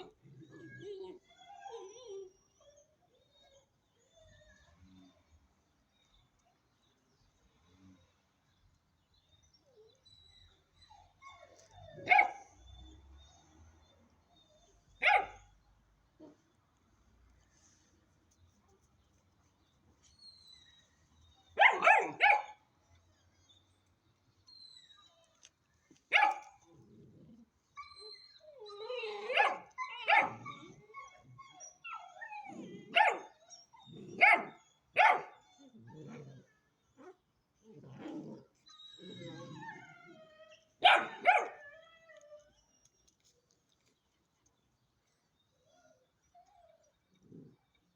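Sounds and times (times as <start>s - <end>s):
puppy whining: 0.0s - 5.3s, 9.5s - 15.3s, 26.2s - 43.9s, 45.0s - 47.9s
puppy barking: 12.0s - 12.5s, 15.0s - 15.5s, 21.6s - 22.6s, 26.1s - 26.5s, 29.3s - 30.4s, 32.9s - 33.3s, 34.2s - 35.4s, 40.8s - 41.6s.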